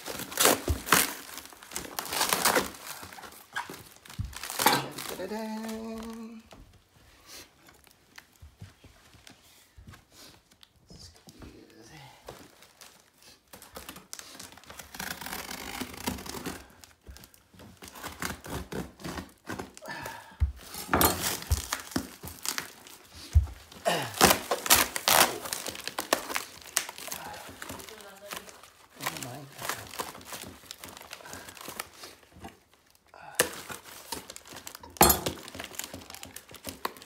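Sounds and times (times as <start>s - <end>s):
plastic wrap crinkling and tearing: 0.0s - 6.7s, 11.6s - 37.0s.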